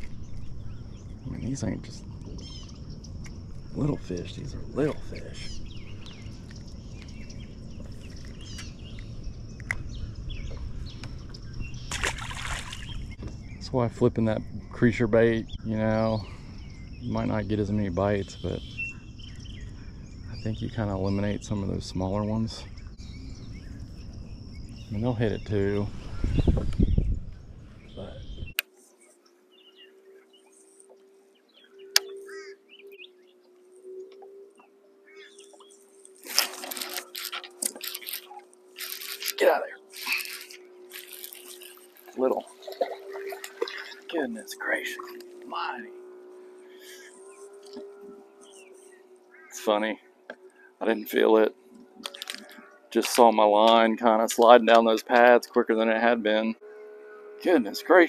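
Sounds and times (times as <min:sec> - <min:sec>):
low rumble: 0:00.0 - 0:28.6
birds chirping: 0:00.0 - 0:58.0
steady low hum: 0:00.0 - 0:58.0.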